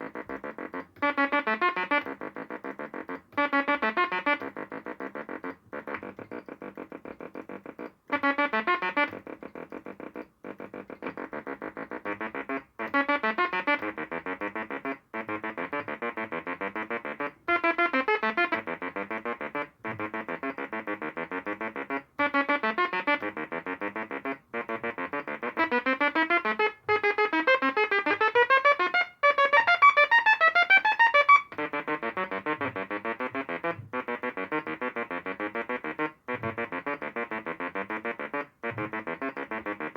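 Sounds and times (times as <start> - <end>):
buzzy synthesizer notes: 0.0 - 39.9.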